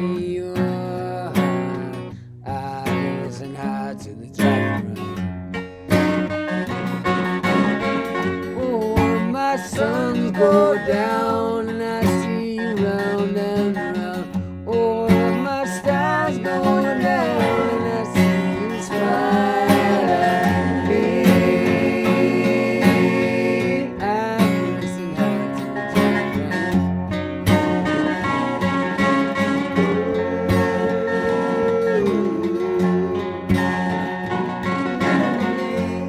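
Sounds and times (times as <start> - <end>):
strummed acoustic guitar: 0.0 - 36.0
sliding lead melody: 27.2 - 36.0.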